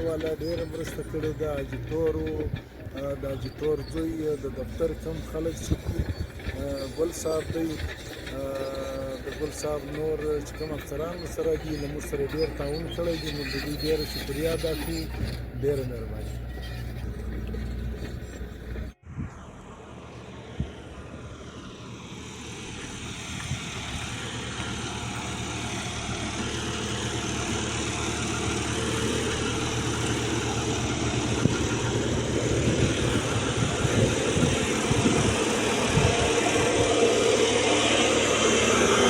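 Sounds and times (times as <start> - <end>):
bulldozer diesel engine running: 0.0 - 39.0.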